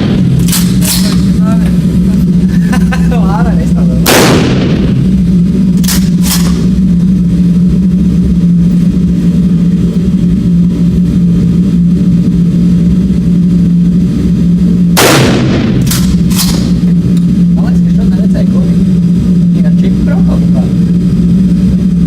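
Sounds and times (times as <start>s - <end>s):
loud low hum: 0.0s - 22.0s
gunshot: 4.0s - 5.0s, 15.0s - 16.7s.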